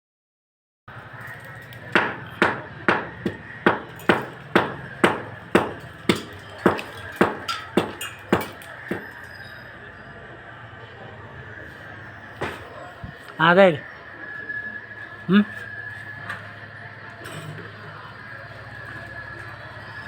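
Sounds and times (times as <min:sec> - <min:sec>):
hammer blows ringing: 0:01.3 - 0:09.7, 0:11.8 - 0:13.2.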